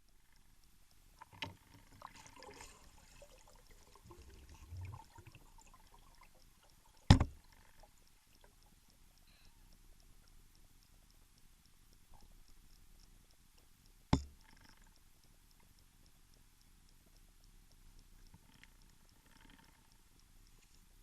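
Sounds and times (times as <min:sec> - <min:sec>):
faint underwater clicks: 0:00.0 - 0:21.0
sharp underwater knocks: 0:07.1 - 0:07.4.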